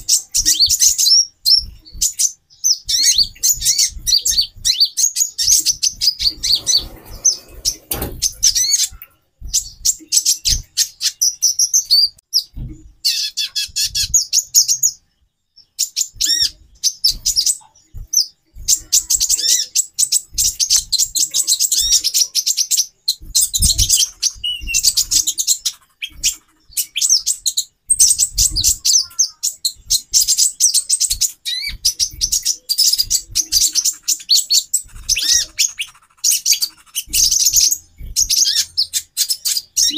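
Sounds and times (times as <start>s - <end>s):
birds chirping and twittering: 0.0s - 39.9s
low thumps: 5.5s - 10.8s, 12.5s - 13.0s, 23.1s - 27.2s, 34.5s - 35.7s.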